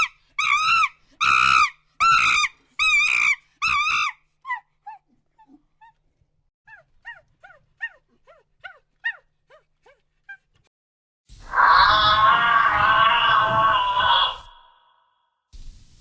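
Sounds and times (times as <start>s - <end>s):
dog whimpering: 6.7s - 10.5s.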